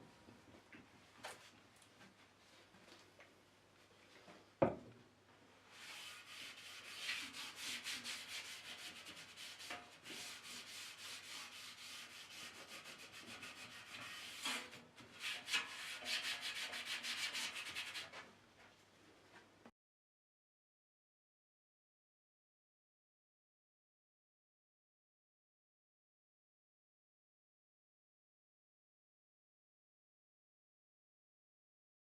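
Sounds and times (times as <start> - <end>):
sanding on wood: 5.8 - 14.4, 15.2 - 18.1.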